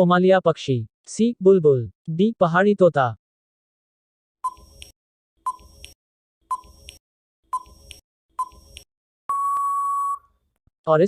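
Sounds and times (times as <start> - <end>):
long steady beep: 9.3 - 10.3
short countdown beeps: 9.3 - 10.3.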